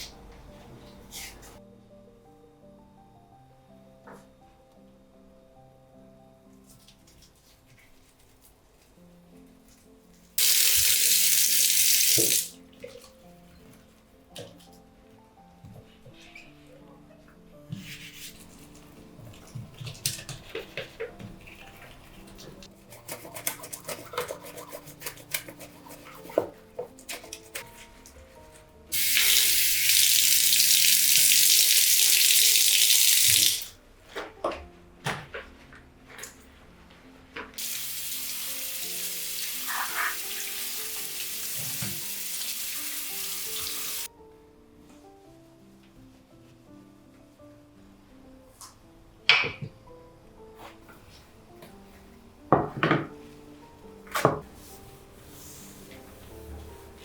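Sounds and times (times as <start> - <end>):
soft background music: 0.0 - 57.0
tap water running: 10.4 - 13.1, 28.9 - 33.7, 37.6 - 44.1
kitchenware knocks: 52.5 - 53.2.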